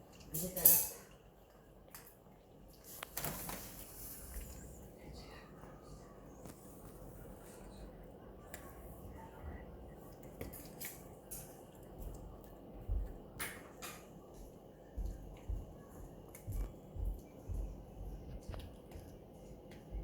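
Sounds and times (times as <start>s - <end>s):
soft low thumps: 12.8s - 13.3s, 14.9s - 19.1s.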